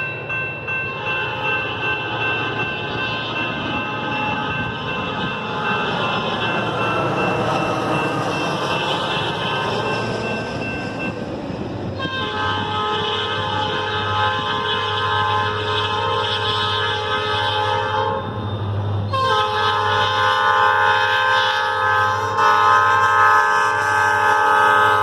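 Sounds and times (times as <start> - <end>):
rumble of passing train: 0.0 - 25.0
locomotive horn chord: 12.0 - 18.3, 19.1 - 25.0.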